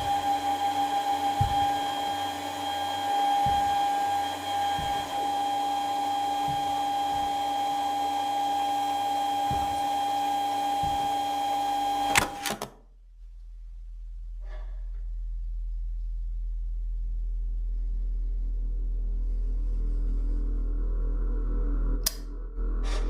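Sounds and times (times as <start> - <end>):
machine hum with held tones: 0.0 - 12.3, 14.0 - 23.0
low thumps: 1.1 - 11.8.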